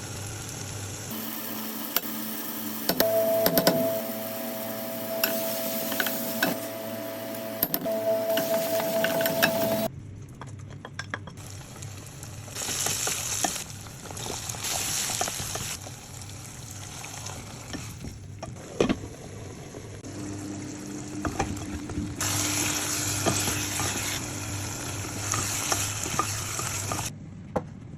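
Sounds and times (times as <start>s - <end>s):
food sizzling in a pan: 0.0s - 9.9s, 11.4s - 27.1s
spoon scraping a pan: 22.2s - 24.2s, 24.9s - 27.1s.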